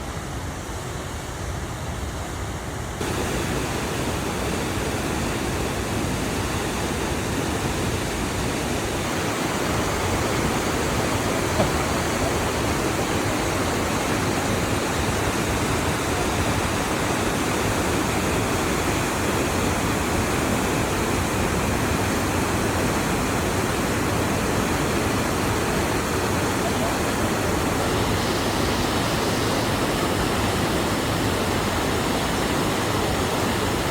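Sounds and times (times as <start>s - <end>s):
waterfall rushing: 9.0s - 18.7s.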